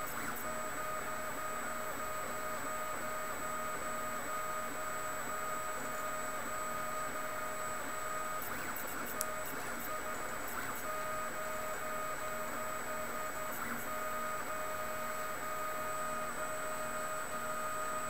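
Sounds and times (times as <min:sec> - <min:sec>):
sharp click: 0:09.1 - 0:09.4.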